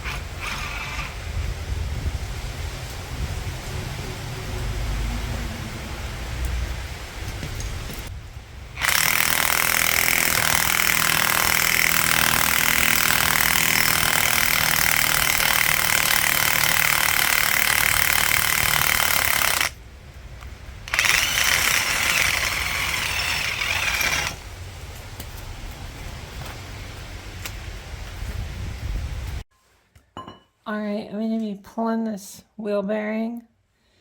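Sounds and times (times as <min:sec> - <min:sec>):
impact wrench hammering: 0:08.8 - 0:19.8.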